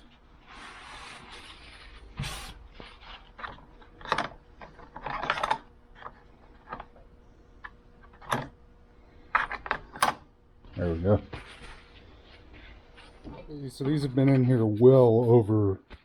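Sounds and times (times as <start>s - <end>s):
hard objects clicking and clattering: 3.4s - 7.0s.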